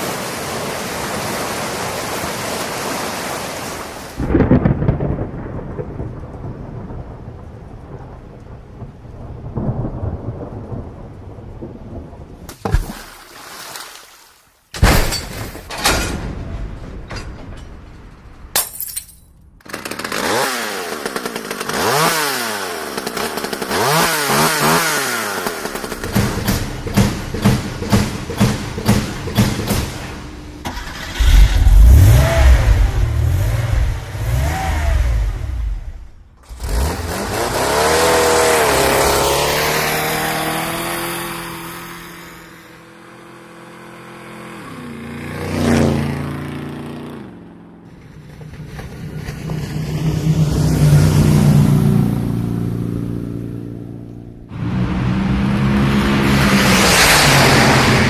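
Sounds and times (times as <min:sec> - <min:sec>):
vehicle engines revving: 0:20.2 - 0:47.3, 0:47.9 - 0:58.0.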